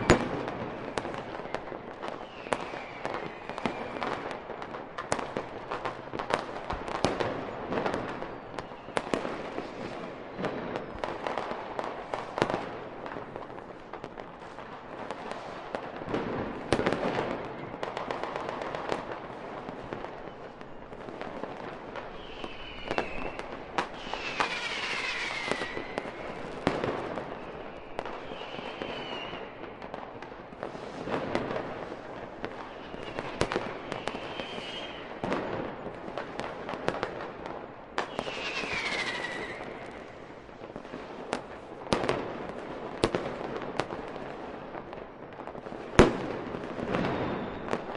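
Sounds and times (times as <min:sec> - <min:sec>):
whistling firework shells: 0:00.0 - 0:04.4, 0:05.3 - 0:12.6, 0:19.9 - 0:29.9, 0:32.4 - 0:35.9, 0:37.9 - 0:41.5, 0:46.1 - 0:47.9
firework bangs and crackling: 0:00.0 - 0:47.9.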